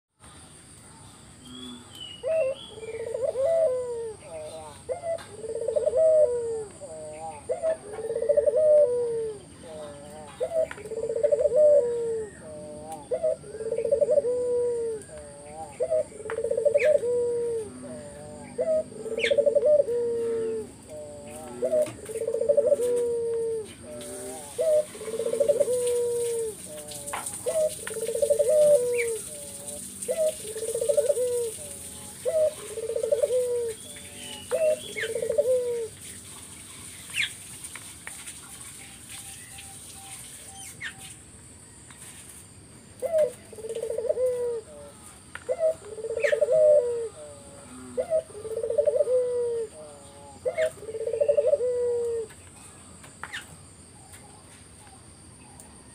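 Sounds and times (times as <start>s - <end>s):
dove cooing: 1.5s - 37.4s, 43.0s - 53.6s.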